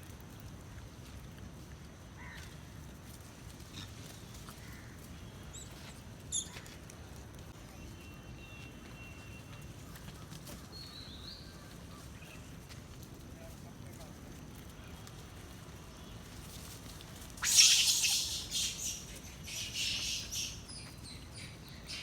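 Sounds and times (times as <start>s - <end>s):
bird chirps: 17.4s - 22.0s
wavering high bird call: 17.4s - 22.0s.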